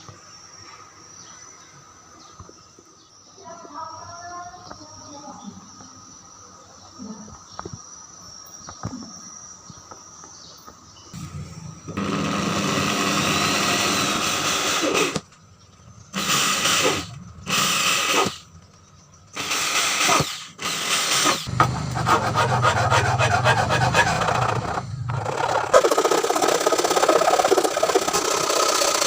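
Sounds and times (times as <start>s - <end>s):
power tool grinding: 11.2s - 15.3s, 16.1s - 18.6s, 19.3s - 29.0s.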